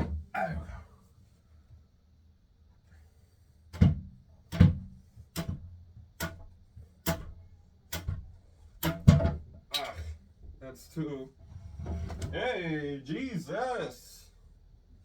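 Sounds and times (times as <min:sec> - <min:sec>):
knocks on wooden bed frame: 0:08.9 - 0:09.4.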